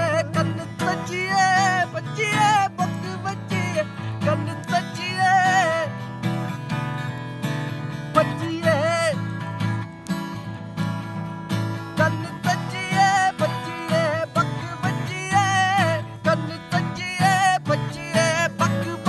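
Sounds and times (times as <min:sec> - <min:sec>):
acoustic guitar strumming: 0:00.0 - 0:19.0
person singing: 0:08.2 - 0:09.6, 0:12.0 - 0:19.0.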